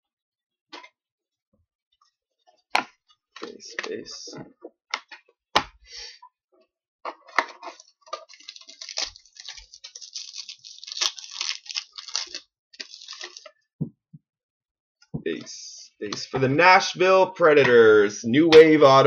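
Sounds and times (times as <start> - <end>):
trading cards sliding and rustling: 7.6 - 13.4.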